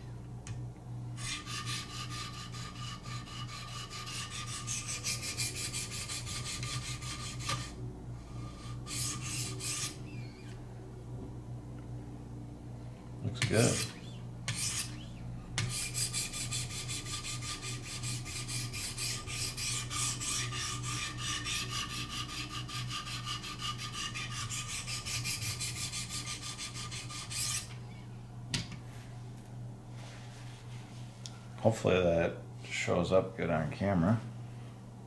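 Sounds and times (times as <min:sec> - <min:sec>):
sharpening stones rasping on knife: 0:08.4 - 0:10.0, 0:13.5 - 0:27.7.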